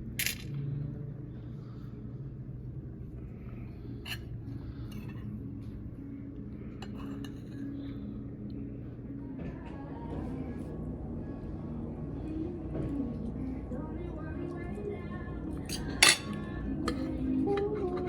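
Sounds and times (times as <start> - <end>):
steady low hum: 0.0 - 18.0
tableware clinking: 15.7 - 17.7.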